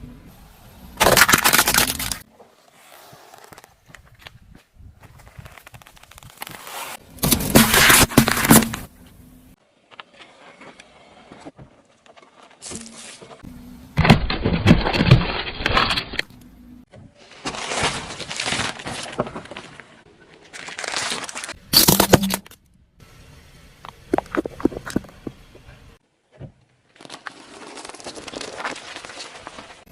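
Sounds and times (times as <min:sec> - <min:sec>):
tyre crushing objects: 0:01.0 - 0:02.3, 0:05.0 - 0:09.0.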